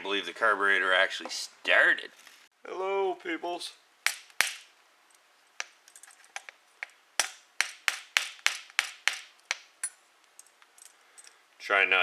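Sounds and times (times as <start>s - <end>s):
tool tapping on metal: 4.1s - 4.7s, 5.6s - 11.0s.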